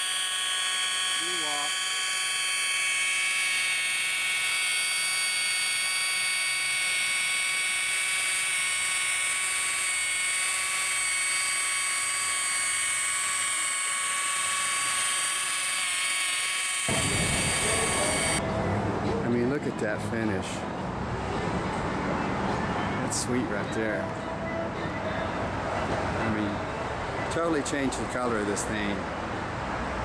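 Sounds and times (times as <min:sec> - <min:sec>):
electric polisher motor whine: 0:00.0 - 0:18.4.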